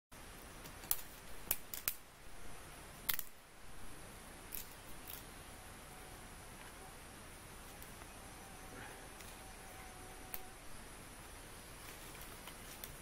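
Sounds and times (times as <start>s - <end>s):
faint high hiss: 0.2s - 13.0s
sharp snaps and clicks: 0.6s - 2.1s, 3.0s - 3.4s, 4.5s - 5.3s, 10.3s - 10.5s, 11.9s - 13.0s.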